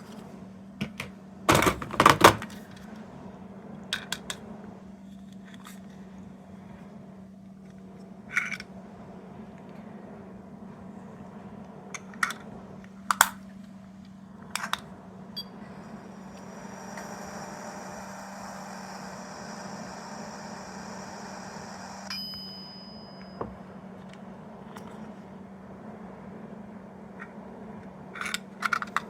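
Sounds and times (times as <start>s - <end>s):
electronic hum from tiny speaker: 0.0s - 29.0s
short electronic ding: 22.1s - 23.5s.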